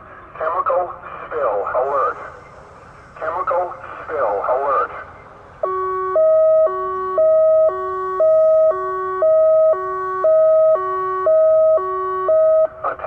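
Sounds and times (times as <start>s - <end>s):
electronic siren hi-lo tone: 5.6s - 12.8s.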